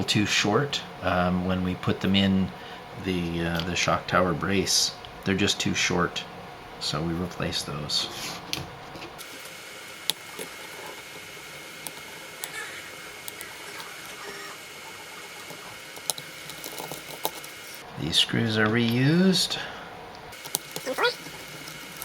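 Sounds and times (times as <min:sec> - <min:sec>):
small screws and parts clicking: 0:14.9 - 0:17.8.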